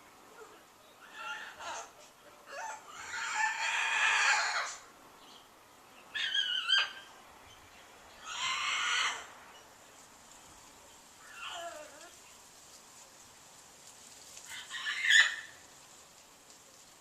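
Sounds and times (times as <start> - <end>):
large bird harsh calls: 8.2 - 9.4, 14.5 - 15.6.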